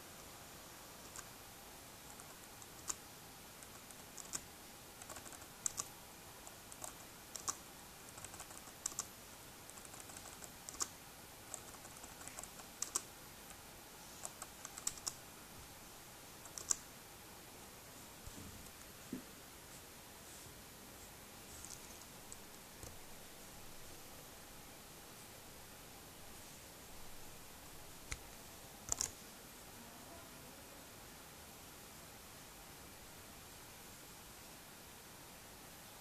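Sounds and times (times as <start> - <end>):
faint steady hiss: 0.0 - 36.0
laptop keyboard typing clicks: 2.1 - 3.0, 3.6 - 5.9, 6.5 - 7.6, 8.2 - 9.1, 9.7 - 10.9, 11.5 - 13.1, 14.2 - 15.2, 16.4 - 16.8, 28.9 - 29.2.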